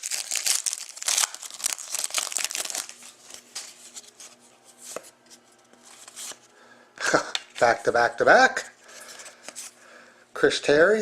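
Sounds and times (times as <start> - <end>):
cards and packaging crinkling: 0.0 - 5.0, 7.2 - 8.2.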